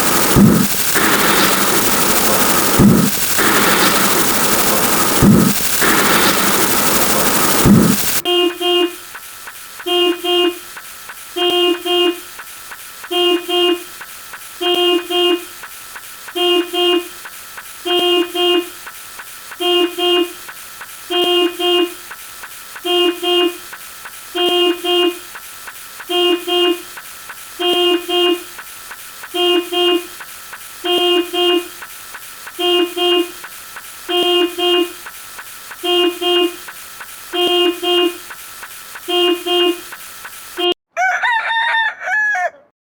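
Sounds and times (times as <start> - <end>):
faint steady hiss: 0.0 - 40.8
car horn double honk: 8.2 - 9.0, 9.9 - 10.6, 11.4 - 12.2, 13.1 - 13.8, 14.6 - 15.5, 16.4 - 17.1, 17.9 - 18.7, 19.6 - 20.4, 21.1 - 22.0, 22.9 - 23.6, 24.4 - 25.2, 26.1 - 26.9, 27.6 - 28.5, 29.4 - 30.1, 30.9 - 31.8, 32.6 - 33.4, 34.1 - 35.0, 35.8 - 36.6, 37.4 - 38.2, 39.1 - 39.9.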